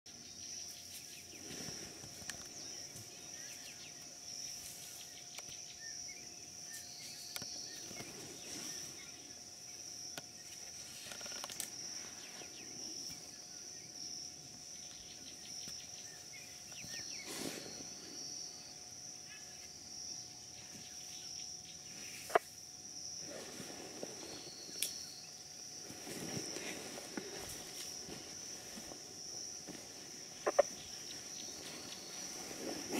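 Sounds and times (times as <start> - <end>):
high-pitched insect chorus: 0.1 - 32.9
scuffing and rustling in sawdust: 25.8 - 30.2, 30.8 - 32.9.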